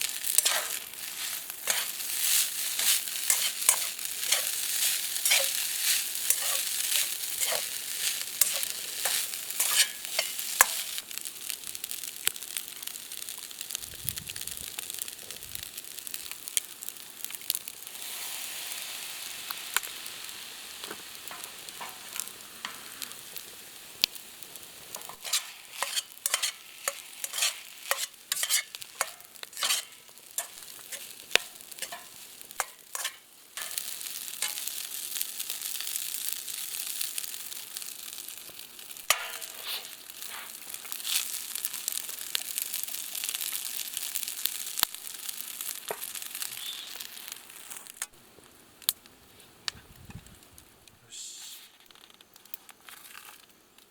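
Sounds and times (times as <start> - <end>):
spatula scraping pan: 0.0 - 11.0, 24.9 - 34.8, 39.1 - 41.4
food sizzling in a frying pan: 0.0 - 53.9.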